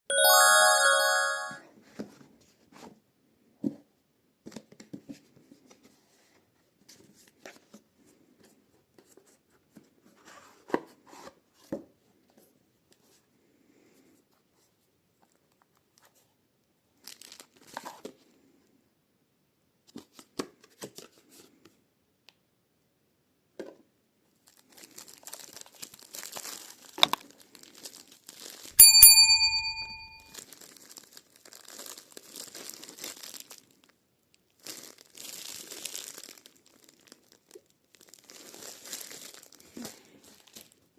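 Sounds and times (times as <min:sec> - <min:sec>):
short bright chime: 0:00.1 - 0:01.6, 0:28.8 - 0:30.3
plastic wrap crinkling: 0:17.0 - 0:18.0, 0:24.4 - 0:28.7, 0:30.4 - 0:40.8.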